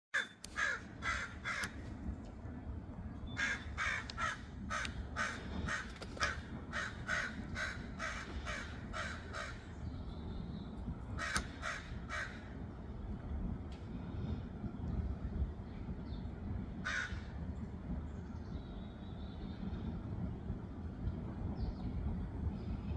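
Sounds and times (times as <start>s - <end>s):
crow cawing: 0.2s - 1.8s, 3.4s - 9.6s, 11.2s - 12.5s, 16.8s - 17.2s
low background rumble: 0.4s - 22.9s.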